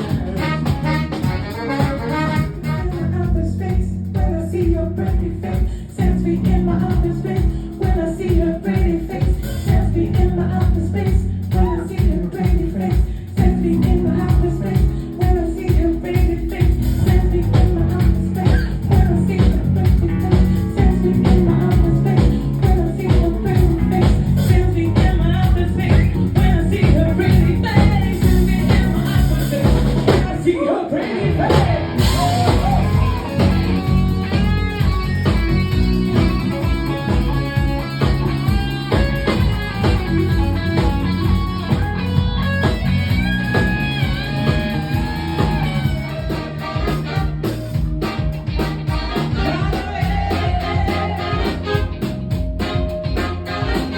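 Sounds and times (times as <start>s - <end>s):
soul band playing with singing: 0.0s - 53.9s.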